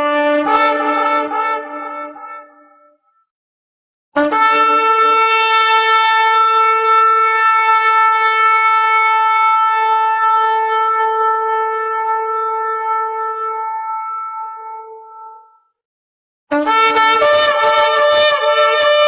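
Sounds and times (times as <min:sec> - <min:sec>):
shofar long held note: 0:04.2 - 0:15.5, 0:16.5 - 0:19.0.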